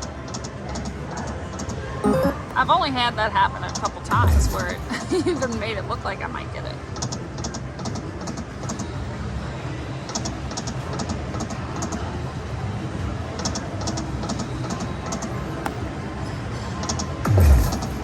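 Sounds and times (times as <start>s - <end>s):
slot machine ticking: 2.0s - 2.6s.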